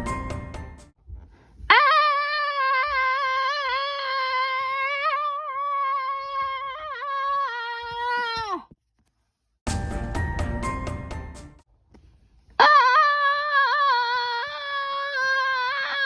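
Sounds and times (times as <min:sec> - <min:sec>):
high wavering wail: 0:12.6 - 0:16.0.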